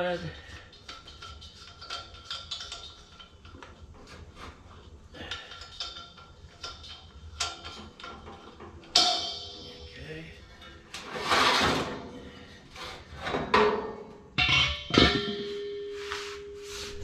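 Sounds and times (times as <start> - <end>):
loud ringing metal clank: 8.9 - 12.1, 13.5 - 16.9.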